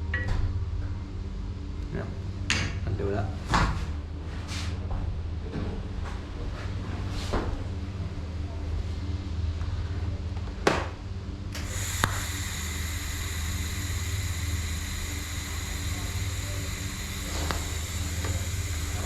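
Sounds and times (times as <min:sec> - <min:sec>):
low machine hum: 0:00.0 - 0:19.0
high hiss with thin tones: 0:11.6 - 0:19.0.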